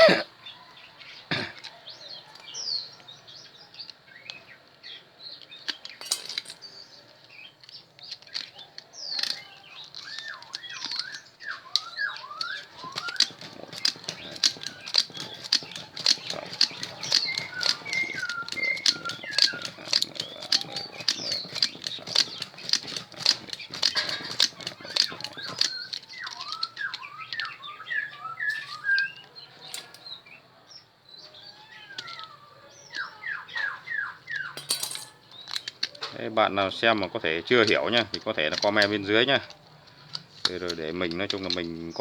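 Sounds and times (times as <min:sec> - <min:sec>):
small birds chirping: 0:00.0 - 0:42.0
rapid light sharp ticks: 0:07.6 - 0:27.6.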